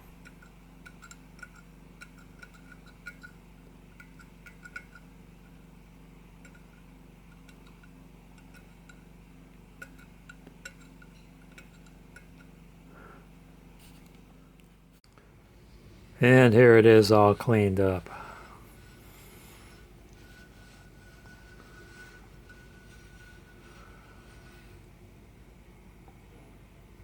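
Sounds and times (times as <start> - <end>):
blade scraping hardened epoxy: 16.2 - 24.9.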